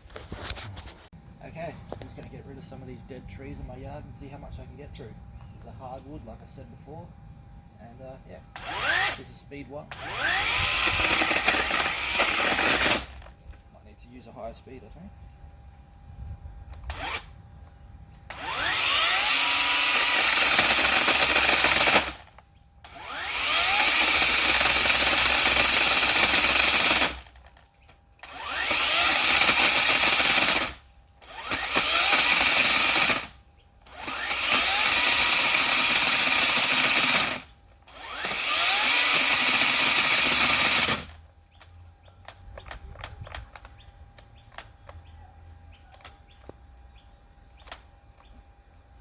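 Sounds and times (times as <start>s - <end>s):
electric chainsaw cutting wood: 8.5s - 13.6s, 16.7s - 17.4s, 18.3s - 41.3s.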